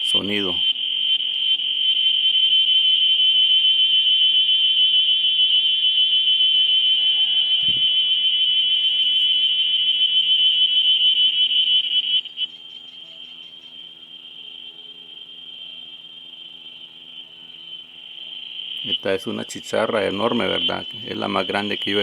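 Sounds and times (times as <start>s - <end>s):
cicada droning: 0.0s - 22.0s
faint cicada drone: 0.0s - 22.0s.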